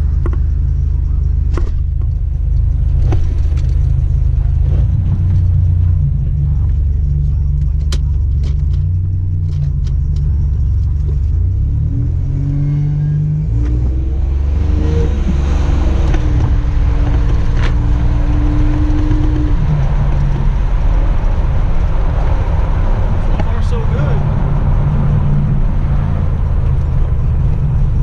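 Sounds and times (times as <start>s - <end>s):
car engine accelerating: 0.0s - 28.0s.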